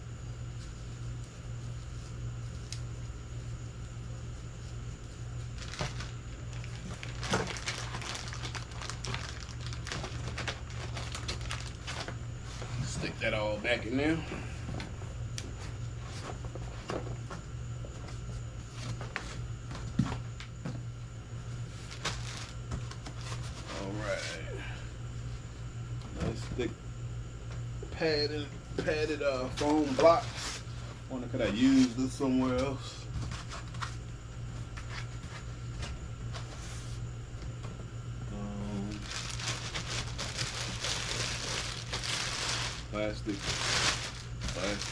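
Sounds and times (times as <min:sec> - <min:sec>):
steady low hum: 0:00.0 - 0:44.9
packaging rustling: 0:05.5 - 0:12.6, 0:21.8 - 0:23.7, 0:38.9 - 0:44.9.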